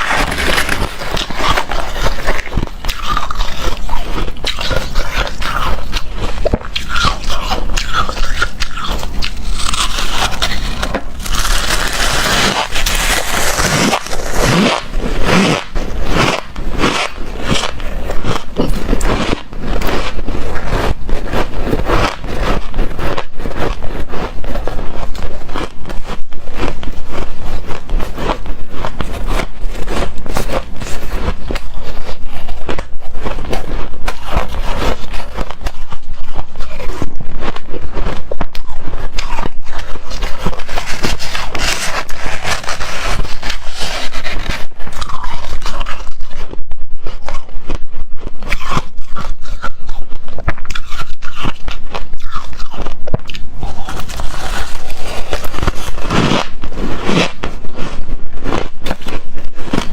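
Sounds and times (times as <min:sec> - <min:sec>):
shaved ice crunching: 0:00.0 - 0:19.3.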